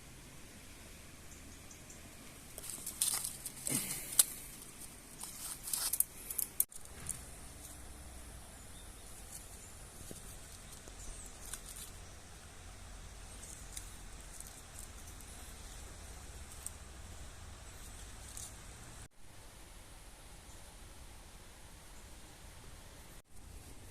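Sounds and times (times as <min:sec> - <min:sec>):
faint outdoor hiss: 0:00.0 - 0:23.9
crisp rustling and crackling: 0:02.2 - 0:08.2, 0:08.8 - 0:19.1.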